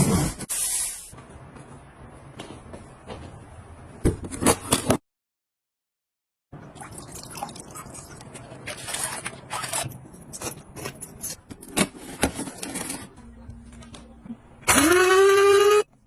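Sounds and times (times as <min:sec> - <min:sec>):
objects scraping and rustling: 0:08.2 - 0:14.1.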